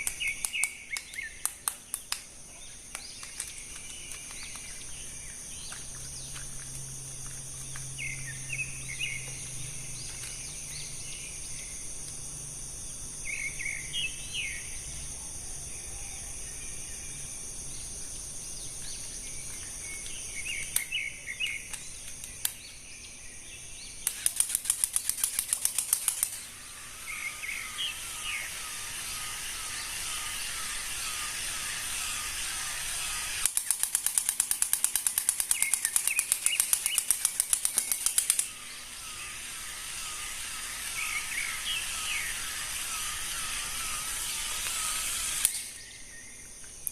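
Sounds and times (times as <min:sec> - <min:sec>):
birds chirping: 0:00.0 - 0:06.6, 0:07.2 - 0:12.0, 0:12.8 - 0:14.9, 0:15.6 - 0:33.8, 0:34.9 - 0:46.6
steady high-pitched hiss: 0:00.0 - 0:46.9
rapid clicking: 0:24.0 - 0:26.4, 0:33.4 - 0:38.5.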